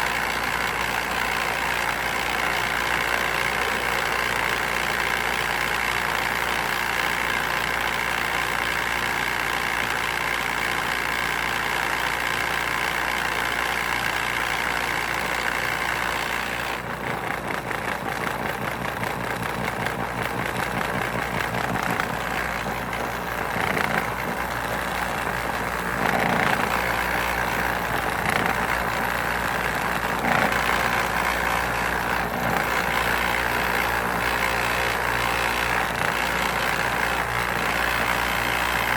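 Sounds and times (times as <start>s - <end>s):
motor-driven sifter droning: 0.0s - 38.9s.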